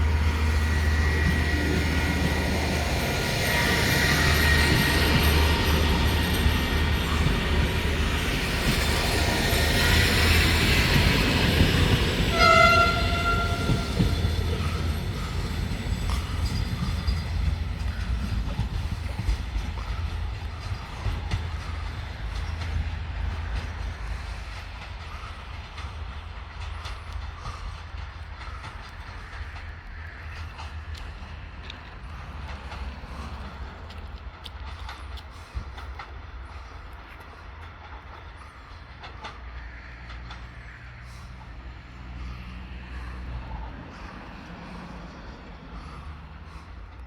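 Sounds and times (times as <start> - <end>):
train running past: 0.0 - 47.0
train horn blast: 12.2 - 14.3.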